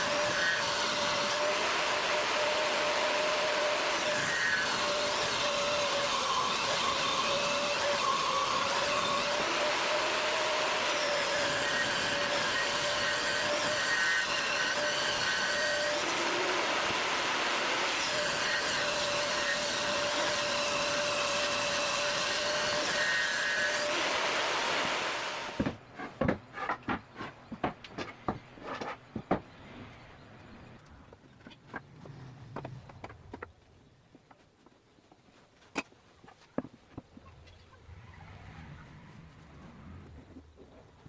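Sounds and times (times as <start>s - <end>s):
power tool cutting wood: 0.0s - 25.8s
wood pieces knocking: 25.6s - 29.6s.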